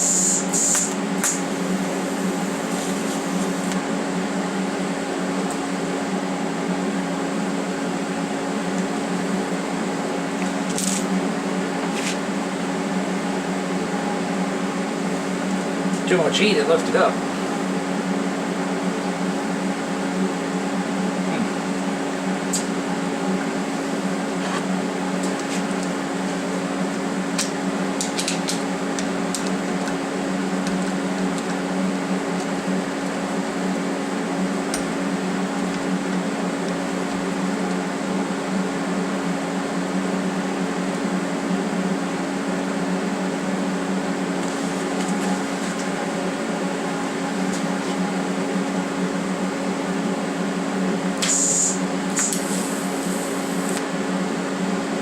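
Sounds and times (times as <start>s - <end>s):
welder humming and whirring: 0.0s - 55.0s
short hiss: 51.2s - 53.2s.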